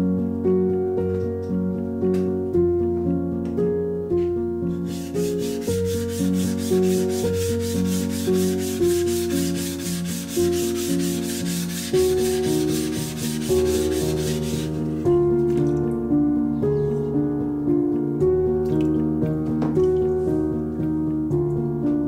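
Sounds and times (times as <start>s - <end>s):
background music: 0.0s - 22.0s
hand sanding strokes: 4.7s - 14.9s.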